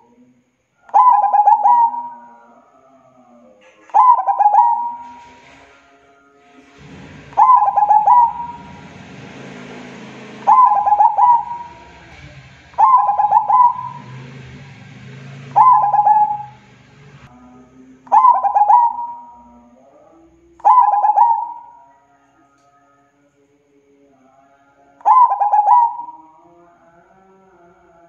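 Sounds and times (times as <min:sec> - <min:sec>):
faint low hum: 0:00.0 - 0:28.0
dove cooing: 0:00.9 - 0:05.5, 0:06.8 - 0:08.8, 0:10.5 - 0:14.2, 0:15.4 - 0:16.6, 0:18.1 - 0:19.6, 0:20.6 - 0:22.0, 0:25.0 - 0:26.2.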